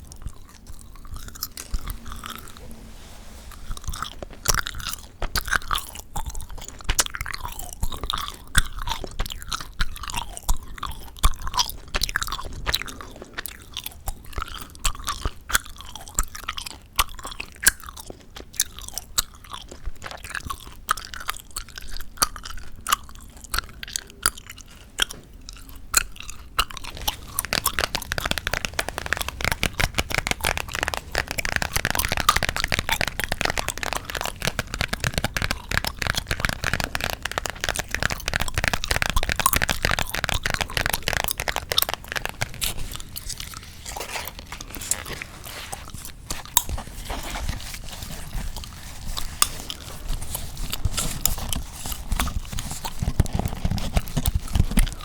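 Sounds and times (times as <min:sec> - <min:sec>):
chewing gum wet clicks: 0:03.9 - 0:46.8.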